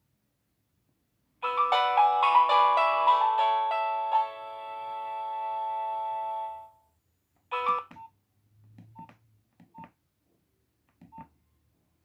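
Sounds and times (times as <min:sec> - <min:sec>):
mobile phone ringtone: 0:01.4 - 0:06.7, 0:07.5 - 0:07.9
keypad beeps and clicks: 0:08.8 - 0:09.9.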